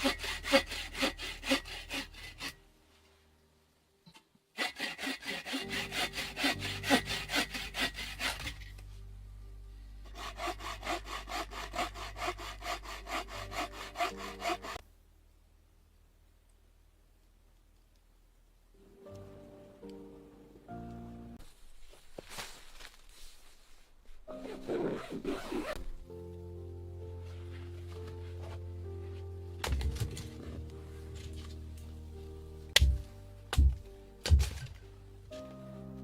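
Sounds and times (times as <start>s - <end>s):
hand saw cutting wood: 0.0s - 2.6s, 4.6s - 8.8s, 10.0s - 14.8s.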